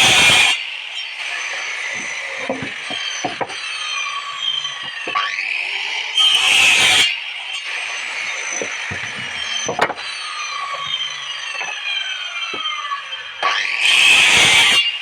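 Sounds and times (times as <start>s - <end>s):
cutting wood noise: 0.0s - 15.0s
power tool motor winding down: 0.0s - 15.0s.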